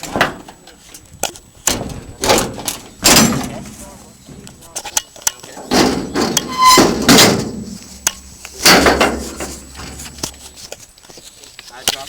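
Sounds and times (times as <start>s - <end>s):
loud heavy bangs and knocks: 1.6s - 4.7s, 5.6s - 10.2s.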